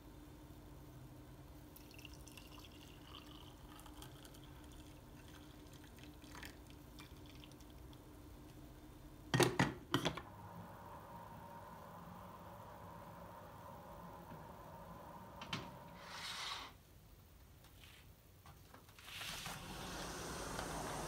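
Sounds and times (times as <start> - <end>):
liquid trickling and dripping: 1.8 - 8.0.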